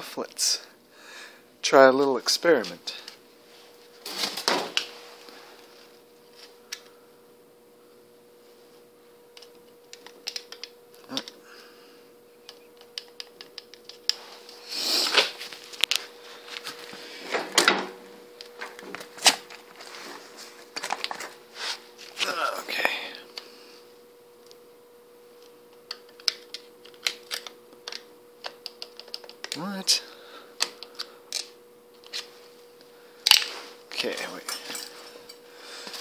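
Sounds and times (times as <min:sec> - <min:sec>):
faint steady hum: 0:00.0 - 0:36.0
hands handling tools and parts: 0:09.3 - 0:11.4, 0:12.4 - 0:23.0, 0:25.4 - 0:29.7, 0:33.2 - 0:36.0.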